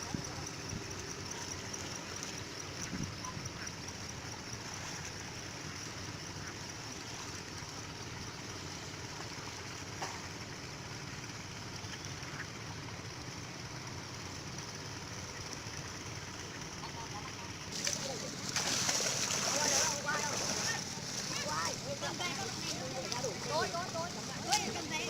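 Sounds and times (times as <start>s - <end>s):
water rushing: 17.6s - 25.0s.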